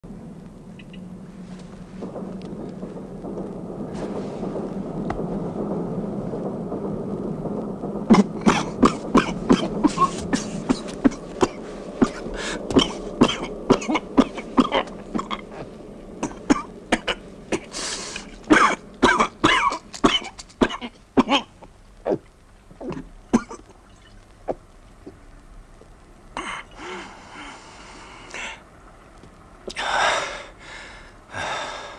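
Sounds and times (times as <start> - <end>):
person coughing: 8.2 - 15.4
person drawing breath: 17.7 - 18.3, 26.8 - 28.6, 29.7 - 31.9.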